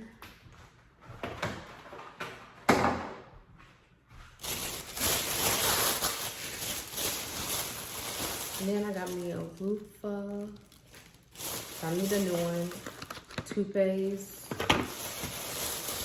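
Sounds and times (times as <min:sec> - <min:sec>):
shopping bag rustling: 0:04.4 - 0:16.0.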